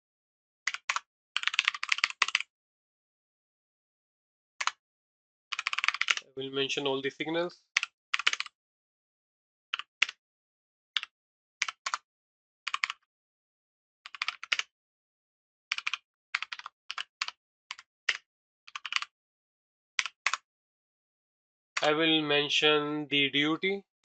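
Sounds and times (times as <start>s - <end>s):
computer keyboard typing: 0.7s - 2.4s, 5.5s - 6.2s, 7.8s - 8.6s, 9.8s - 10.2s, 11.0s - 12.0s, 12.7s - 13.0s, 14.1s - 14.7s, 15.7s - 19.1s, 20.0s - 20.4s.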